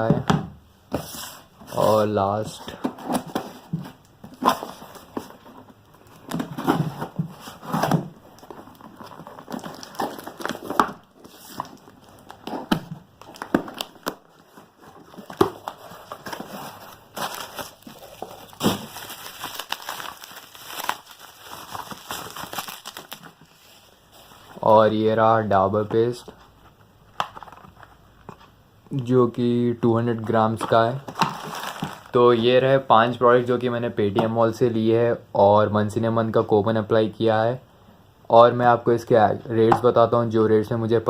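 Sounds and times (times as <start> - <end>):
packaging crinkling and tearing: 7.5 - 24.4, 31.1 - 32.2.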